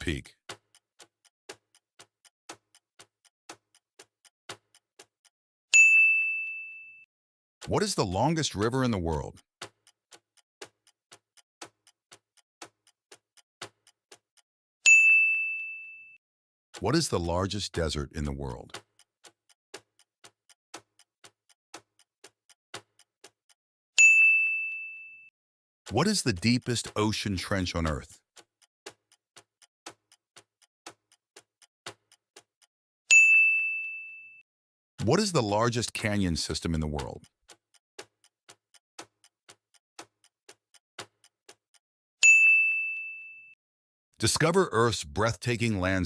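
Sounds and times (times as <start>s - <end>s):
clock ticking: 0.0s - 6.0s, 7.6s - 15.2s, 16.7s - 24.3s, 25.9s - 33.3s, 35.0s - 41.8s, 44.2s - 46.0s
bell ding: 5.8s - 7.0s, 14.9s - 16.2s, 24.0s - 25.3s, 33.1s - 34.4s, 42.2s - 43.5s
bright ding: 42.2s - 43.5s.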